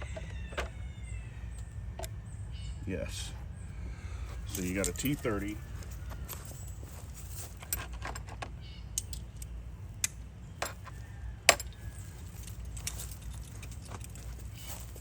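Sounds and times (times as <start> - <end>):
small metal tools clinking: 4.4 - 15.0.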